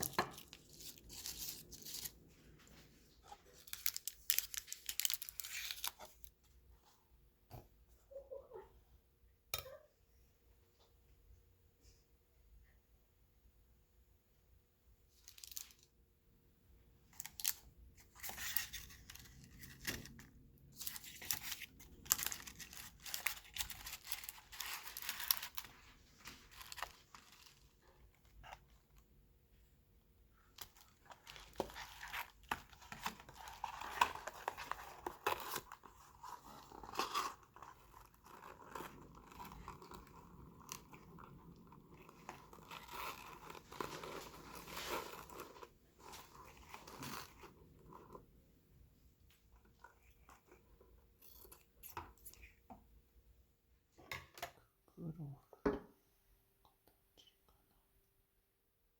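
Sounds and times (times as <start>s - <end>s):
thin plastic sheets crinkling: 0.0s - 6.3s, 17.1s - 29.0s, 30.5s - 48.0s.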